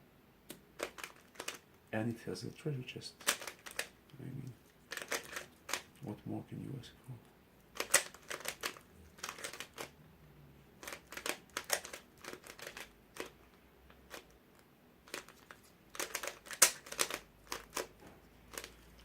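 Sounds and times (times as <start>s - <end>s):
puzzle cube clicking: 0.5s - 1.6s, 3.2s - 6.0s, 7.7s - 10.0s, 10.8s - 14.4s, 15.1s - 19.0s.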